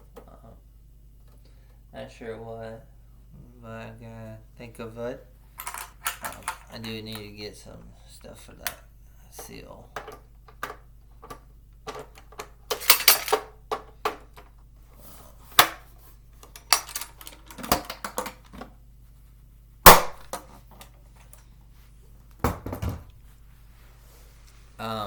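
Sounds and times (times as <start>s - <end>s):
metal gear clanking: 12.8s - 13.4s
loud sharp bang: 19.8s - 20.3s.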